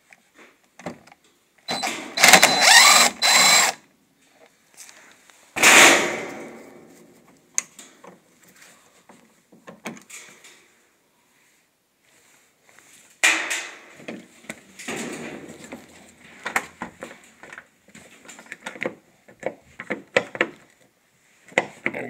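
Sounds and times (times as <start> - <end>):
cordless drill whining: 1.7 - 3.8.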